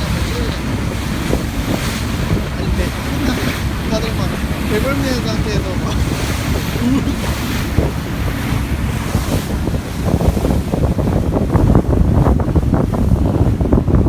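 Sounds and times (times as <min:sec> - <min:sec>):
hull slapping waves: 0:00.0 - 0:14.0
water rushing past hull: 0:00.0 - 0:14.0
wind buffeting microphone: 0:00.0 - 0:14.0.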